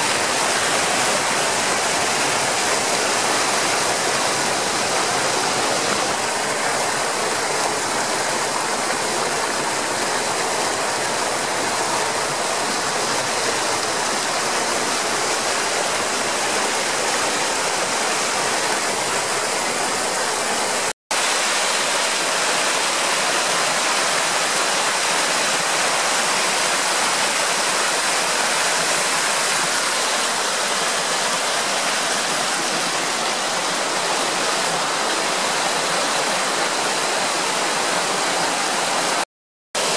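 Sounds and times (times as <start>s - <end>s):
waterfall over rocks: 0.0s - 39.9s.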